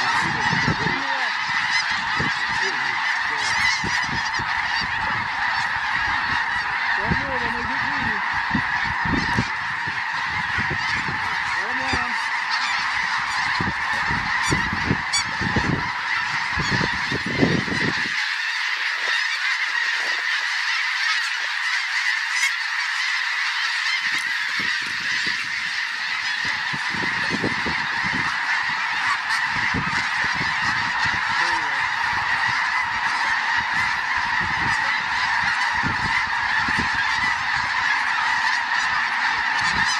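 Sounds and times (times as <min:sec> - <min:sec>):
wind buffeting microphone: 0:00.0 - 0:02.7, 0:03.7 - 0:12.1, 0:12.9 - 0:18.2, 0:24.4 - 0:31.4, 0:32.0 - 0:37.8
snow geese honking: 0:00.0 - 0:39.9.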